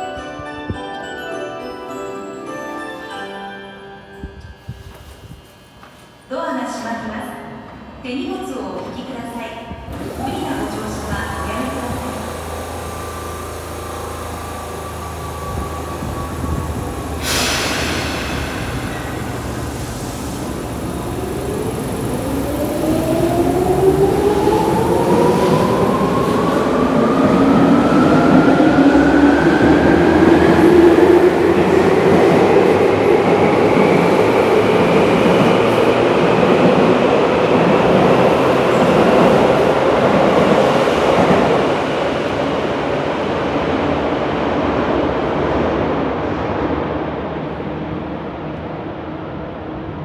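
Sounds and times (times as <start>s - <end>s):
train running noise: 8.7s - 50.0s
electric train motors whining: 9.7s - 42.4s.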